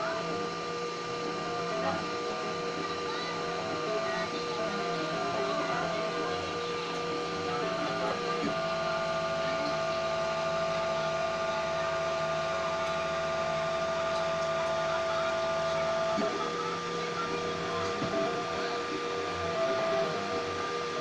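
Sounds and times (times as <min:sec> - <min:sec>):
stepper motors whining: 0:00.0 - 0:21.0.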